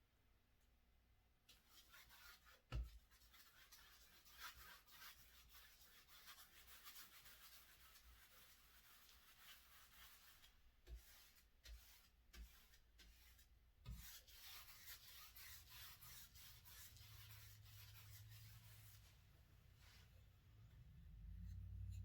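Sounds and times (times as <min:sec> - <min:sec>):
paintbrush rubbing on wall: 0:01.5 - 0:20.2.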